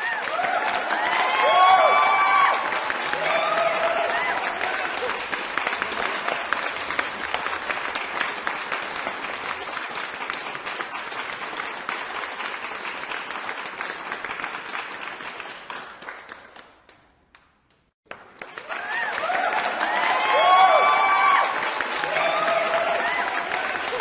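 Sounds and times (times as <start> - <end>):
crowd applauding: 0.0 - 16.9, 18.0 - 24.0.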